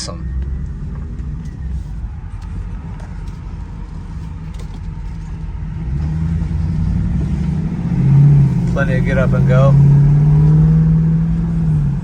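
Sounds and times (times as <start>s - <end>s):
car engine running: 0.0s - 12.0s
road rumble: 0.0s - 12.0s.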